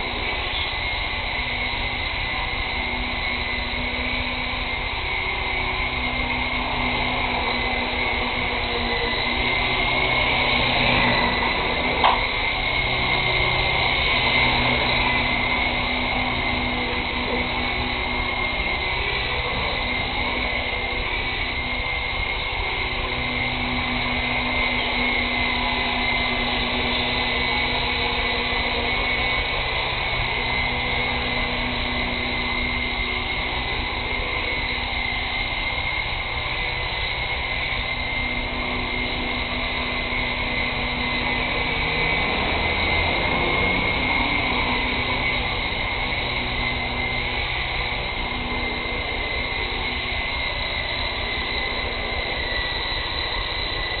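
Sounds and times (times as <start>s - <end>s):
model helicopter rotor whine: 0.0s - 54.0s.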